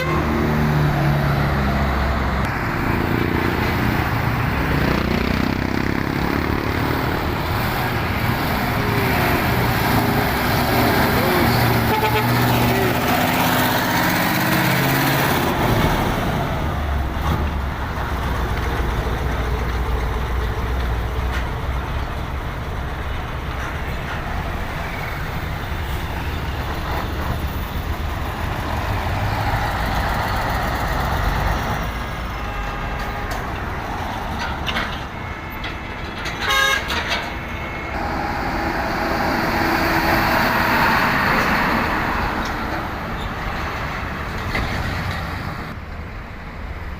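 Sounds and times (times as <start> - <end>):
horn toots: 0.0 - 0.5, 11.2 - 13.1, 36.4 - 37.2
diesel trucks climbing: 0.0 - 46.9
road traffic: 0.0 - 46.9.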